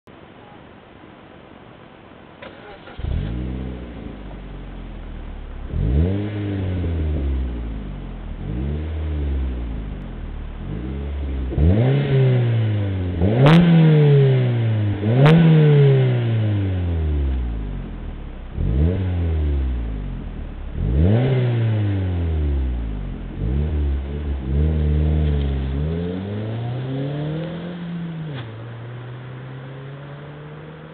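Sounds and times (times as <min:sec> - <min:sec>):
car engine idling: 0:02.4 - 0:11.8, 0:16.2 - 0:26.7
exhaust crack: 0:02.4 - 0:29.4
car engine revving: 0:02.4 - 0:30.9.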